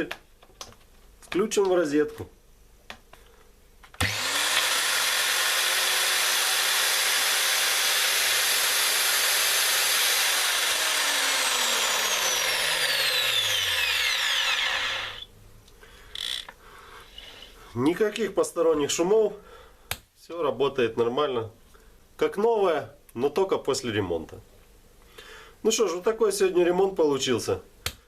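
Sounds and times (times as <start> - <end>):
angle grinder whining: 4.0 - 15.3.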